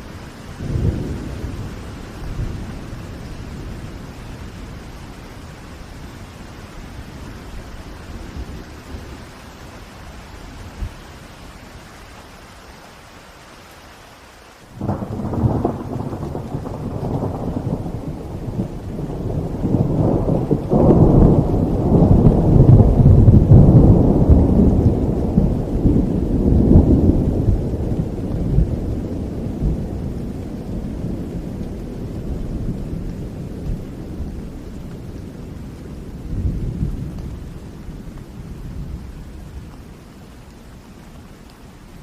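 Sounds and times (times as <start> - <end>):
steady rain: 0.0 - 42.0
thunder rolling: 14.8 - 35.4.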